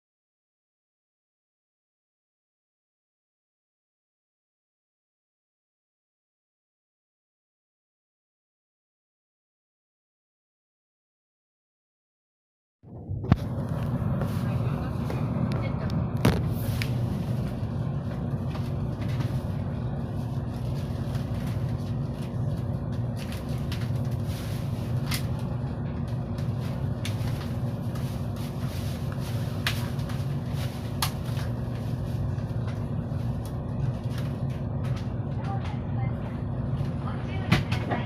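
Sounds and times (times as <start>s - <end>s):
train interior hum: 12.8s - 38.0s.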